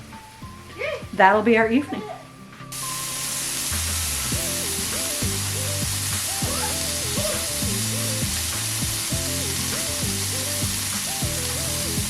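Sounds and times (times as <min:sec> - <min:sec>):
melodic phrase over bass notes: 0:02.8 - 0:12.0.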